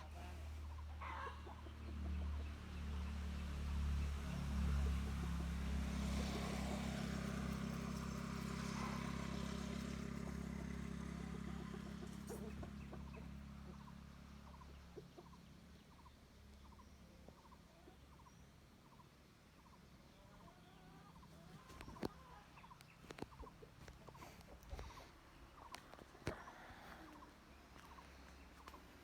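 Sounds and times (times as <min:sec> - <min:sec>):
heavy vehicle engine humming: 0:00.0 - 0:16.1.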